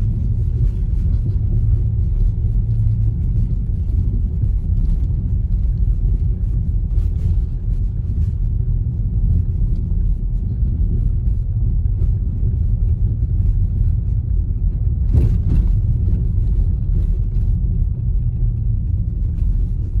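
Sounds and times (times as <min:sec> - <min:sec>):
car engine rumble: 0:00.0 - 0:20.0
road noise: 0:00.0 - 0:20.0.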